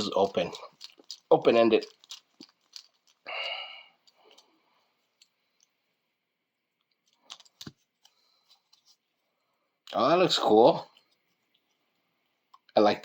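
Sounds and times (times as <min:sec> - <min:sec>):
small plastic parts clicking: 0:00.0 - 0:03.3, 0:06.8 - 0:08.1.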